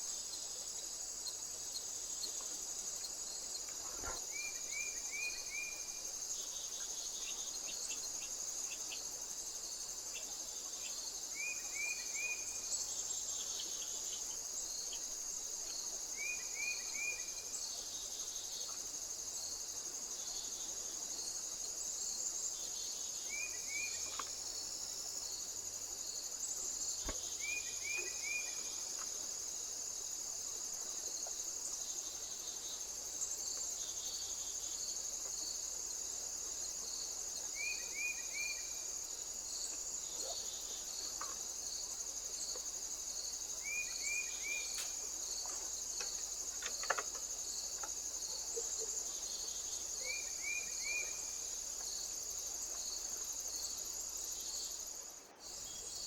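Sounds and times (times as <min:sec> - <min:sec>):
insects trilling: 0:00.0 - 0:56.0
short insect chirps: 0:22.8 - 0:30.1, 0:36.8 - 0:56.0.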